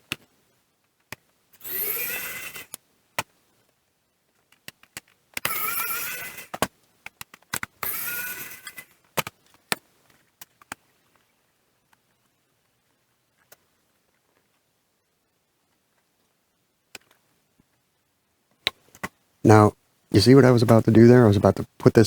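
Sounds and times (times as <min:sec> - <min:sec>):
electric screwdriver whirring: 0:01.6 - 0:02.8, 0:05.4 - 0:06.6, 0:07.8 - 0:08.9.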